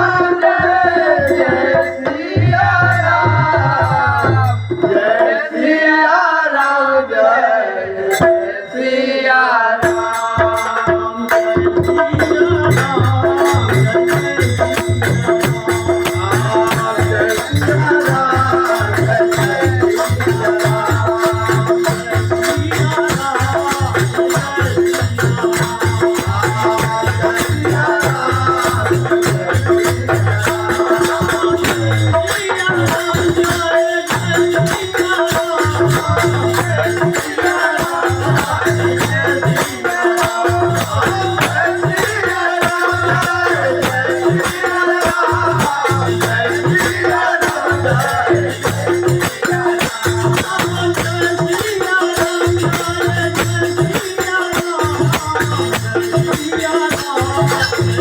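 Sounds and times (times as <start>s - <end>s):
shaker beat: 12.8s - 58.0s.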